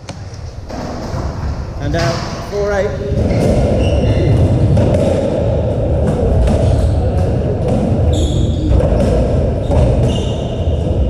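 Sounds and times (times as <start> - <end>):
racketball hitting rackets and walls: 0.0 - 2.5, 3.1 - 11.0
low hum of hall: 0.0 - 11.0
shoes squeaking on court floor: 3.3 - 4.5, 8.0 - 11.0.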